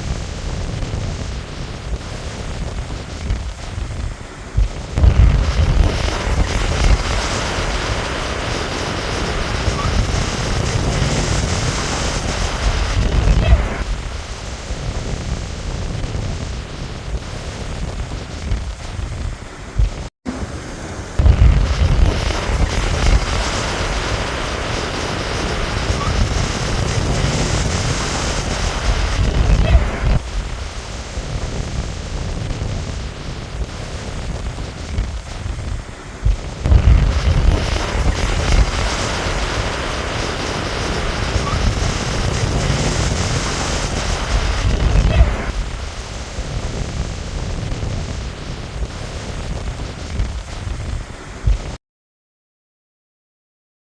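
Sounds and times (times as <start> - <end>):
wind buffeting microphone: 0.0 - 51.8
river rushing: 1.2 - 15.7, 16.8 - 51.4
deep low rumble: 3.2 - 7.2, 18.4 - 23.7, 34.9 - 38.8
river water rushing: 20.3 - 31.2.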